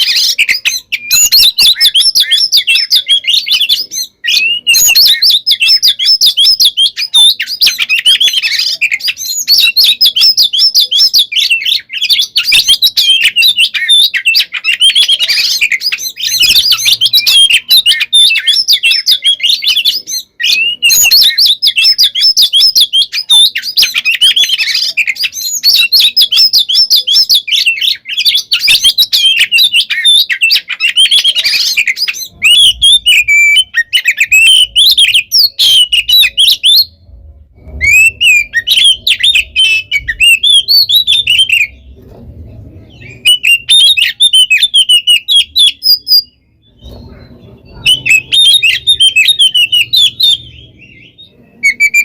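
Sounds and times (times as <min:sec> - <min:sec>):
bird singing rapid chirps and whistles: 0:00.0 - 0:52.0.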